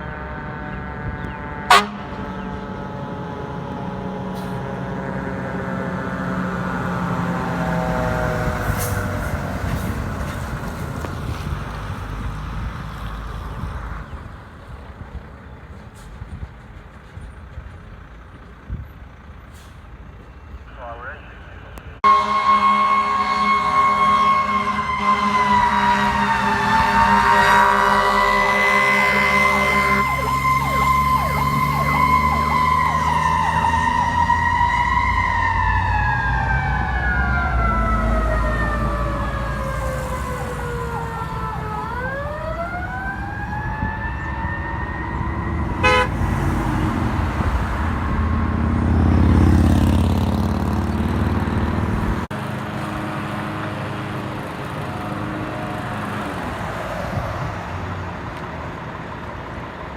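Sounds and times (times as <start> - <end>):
diesel engine rumble: 0.0 - 59.9
road traffic: 0.0 - 59.9
mechanical siren wailing: 22.0 - 46.2.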